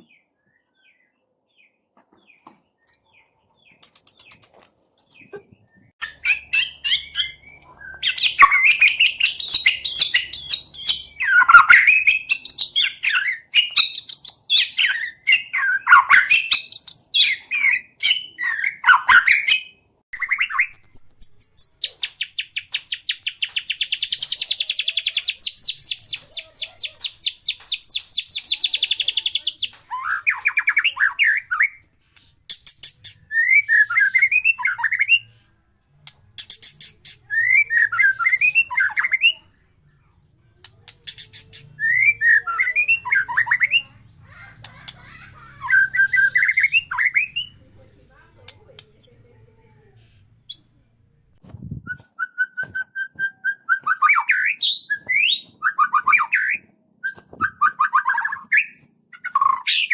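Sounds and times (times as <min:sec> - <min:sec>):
bird singing varied phrases: 0:05.2 - 0:51.3.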